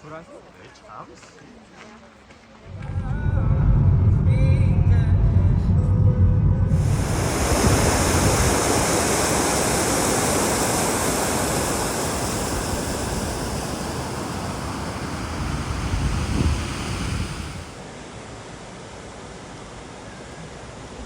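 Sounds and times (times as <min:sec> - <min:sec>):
water rushing: 0:06.6 - 0:17.8.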